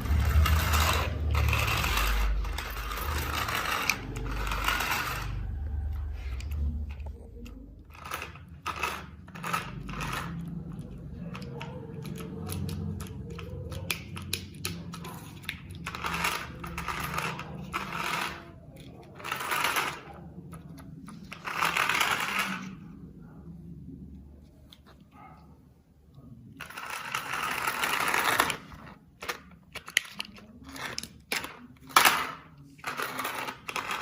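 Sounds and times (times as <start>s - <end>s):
toy car electric motors whirring: 0.0s - 23.0s, 26.6s - 34.0s.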